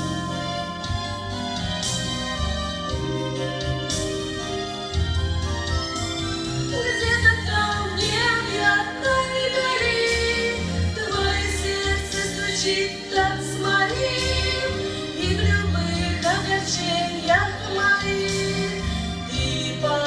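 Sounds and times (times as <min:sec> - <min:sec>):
instrumental accompaniment with bass beat: 0:00.0 - 0:20.0
woman singing: 0:06.7 - 0:20.0.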